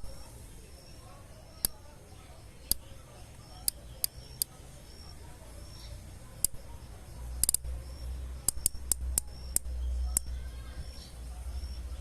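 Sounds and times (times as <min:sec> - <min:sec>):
sharp irregular clicks: 0:01.6 - 0:01.8, 0:06.4 - 0:06.7, 0:07.4 - 0:07.8, 0:08.4 - 0:10.3.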